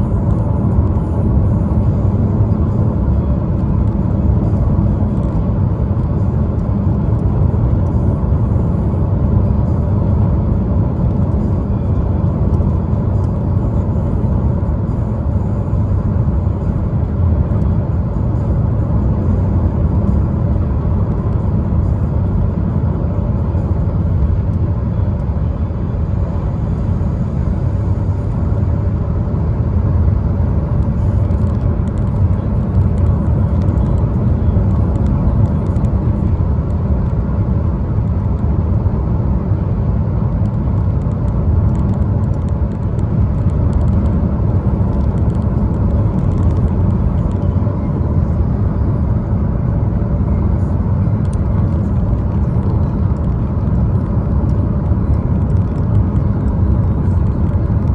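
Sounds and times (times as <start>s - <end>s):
car road and engine rumble: 0.0s - 57.9s.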